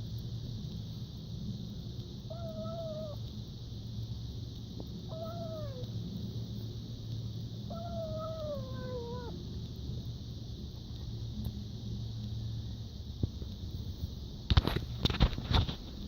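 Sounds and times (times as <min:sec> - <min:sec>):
kitten meowing: 0:02.3 - 0:03.2, 0:05.1 - 0:05.9, 0:07.7 - 0:09.4.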